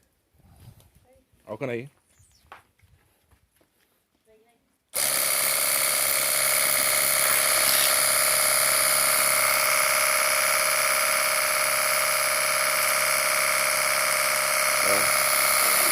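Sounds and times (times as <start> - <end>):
pressure washer whine and hiss: 5.0 - 15.9.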